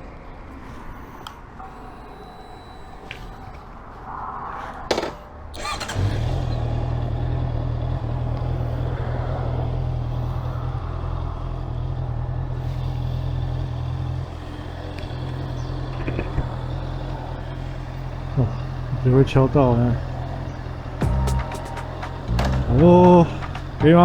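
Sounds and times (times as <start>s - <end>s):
motorcycle engine starting and idling: 5.5s - 24.0s
sharp knocks: 21.0s - 24.0s.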